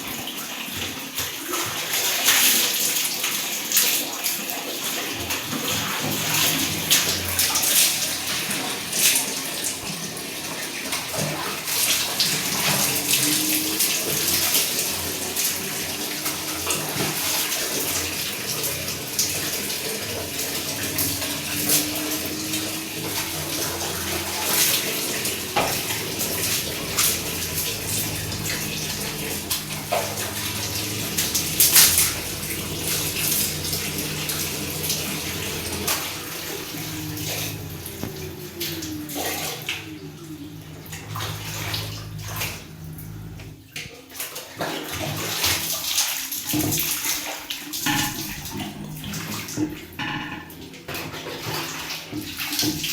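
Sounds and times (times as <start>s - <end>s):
water running and splashing: 0.0s - 52.9s.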